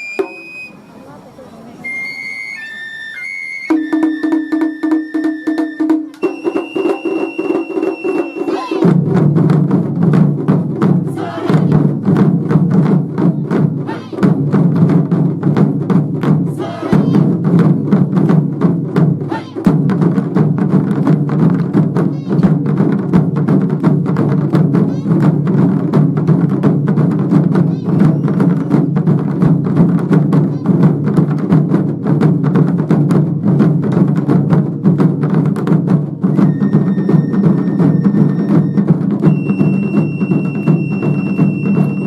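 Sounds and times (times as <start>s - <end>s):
rapid taiko drum strikes: 3.8s - 42.0s
deep booming drums: 8.8s - 42.0s.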